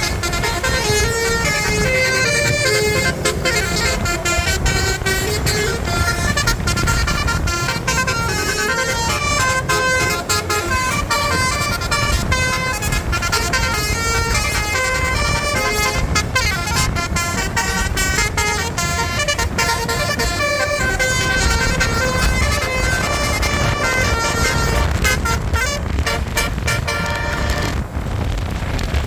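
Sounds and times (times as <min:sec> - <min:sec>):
musical air horn tune: 0:00.0 - 0:27.8
steady low rumble: 0:00.0 - 0:29.0.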